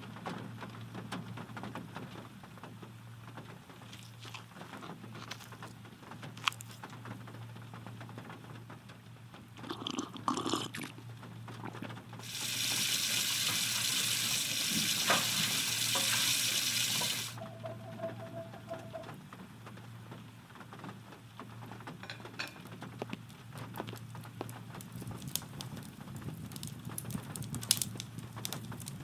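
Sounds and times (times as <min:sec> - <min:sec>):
soft rain patter: 0:00.0 - 0:29.0
rush of pouring water: 0:12.2 - 0:19.0.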